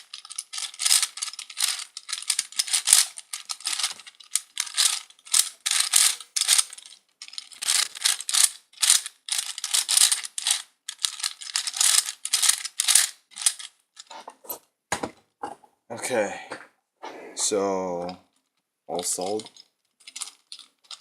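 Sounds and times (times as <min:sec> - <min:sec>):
plastic puzzle gears clicking: 0:00.0 - 0:14.1, 0:19.2 - 0:21.0.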